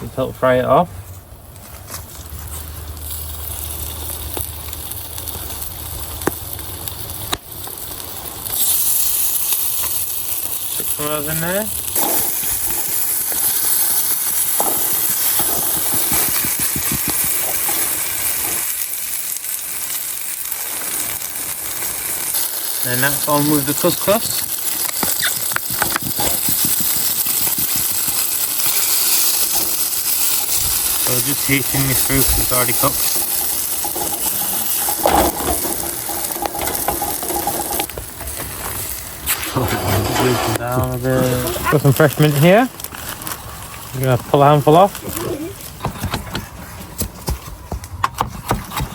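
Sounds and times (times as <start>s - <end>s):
sauce sizzling on a plate: 2.4s - 46.0s
brief scrape: 39.3s - 40.6s.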